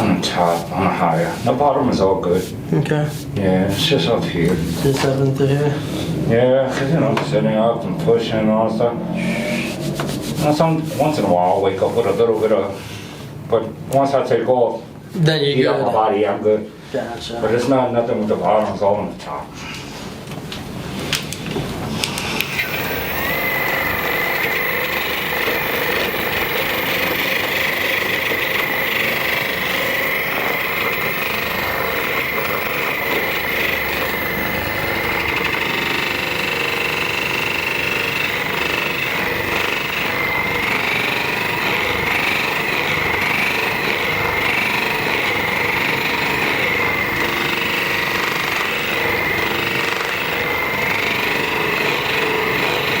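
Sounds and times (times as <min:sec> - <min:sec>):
massage gun buzzing: 0:22.4 - 0:53.0.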